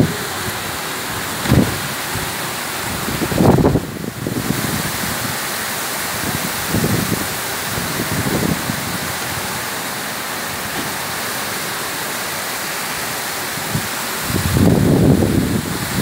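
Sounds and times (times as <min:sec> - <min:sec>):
low rumbles from wind gusts: 0:00.0 - 0:12.0, 0:13.0 - 0:16.0
heavy rain pouring: 0:00.0 - 0:16.0.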